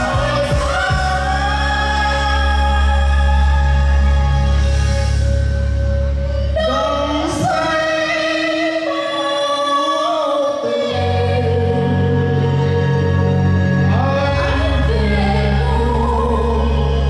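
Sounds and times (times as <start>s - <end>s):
deep bass: 0.0s - 8.4s, 10.9s - 17.0s
sustained instrumental backing: 0.0s - 17.0s
person singing a melody: 6.5s - 13.0s, 13.8s - 17.0s.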